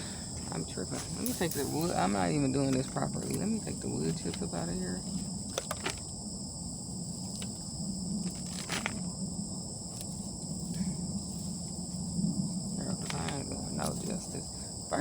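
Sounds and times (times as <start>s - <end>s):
insects chirring: 0.0s - 15.0s
low steady hum: 0.0s - 15.0s
wood chips rustling and clicking: 0.4s - 6.1s, 8.2s - 9.1s.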